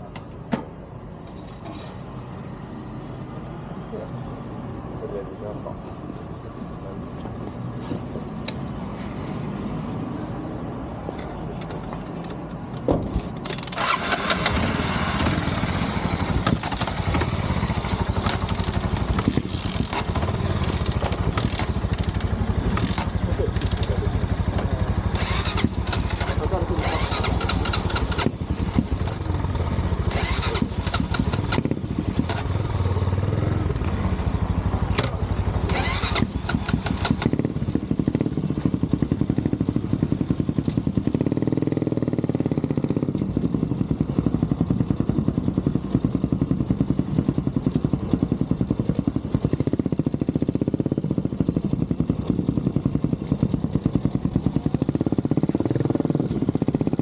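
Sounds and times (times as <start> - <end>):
motorcycle engine running: 11.8 - 57.0.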